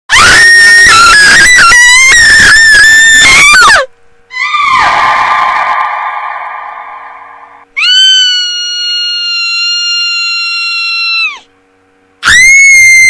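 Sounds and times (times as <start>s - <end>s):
woman screaming: 0.1s - 4.8s, 7.8s - 11.4s, 12.2s - 13.0s.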